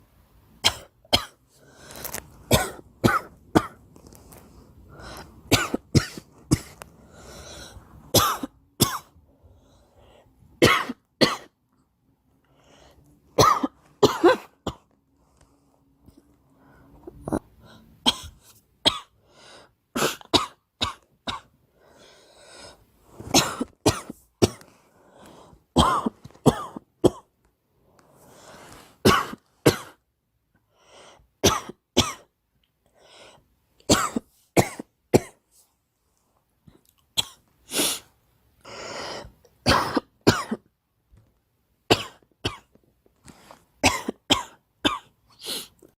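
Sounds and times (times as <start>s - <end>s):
girl coughing: 2.5s - 3.8s, 5.5s - 6.8s, 8.2s - 9.1s, 10.6s - 11.5s, 13.4s - 14.8s, 20.0s - 21.5s, 23.3s - 24.6s, 25.8s - 27.3s, 29.0s - 30.0s, 31.4s - 32.3s, 33.9s - 35.4s, 39.6s - 40.7s, 41.9s - 42.7s, 43.8s - 45.1s.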